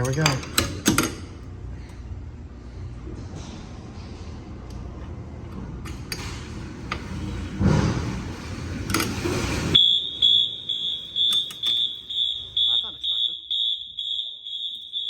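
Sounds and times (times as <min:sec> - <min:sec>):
pulsing fire alarm horn: 0:09.8 - 0:15.0.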